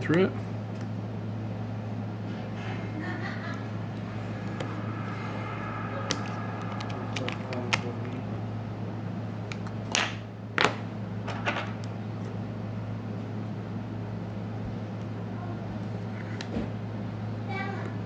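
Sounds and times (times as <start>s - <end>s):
low hum: 1.4s - 11.2s.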